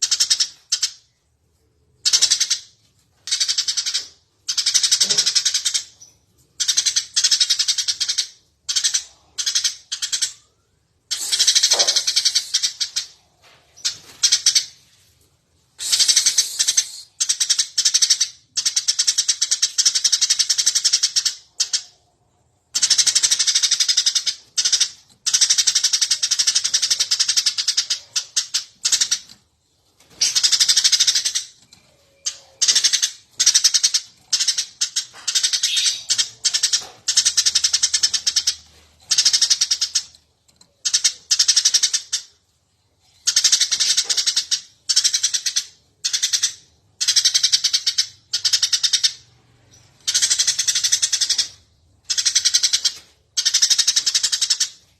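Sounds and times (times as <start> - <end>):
sparrow chirping: 2.0 - 14.9, 15.8 - 22.0, 22.7 - 40.2, 43.2 - 54.9.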